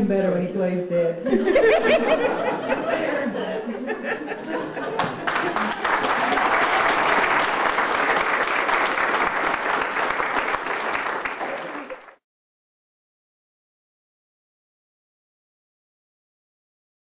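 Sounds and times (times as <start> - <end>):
audience applauding: 4.8 - 12.2.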